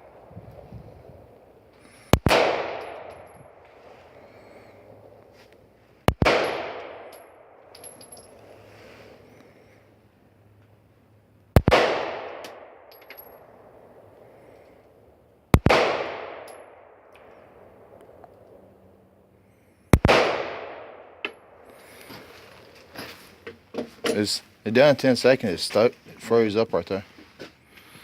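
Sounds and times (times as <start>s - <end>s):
gunshots with echo: 2.1s - 3.6s, 6.1s - 7.6s, 11.6s - 12.9s, 15.5s - 17.1s, 20.0s - 21.6s.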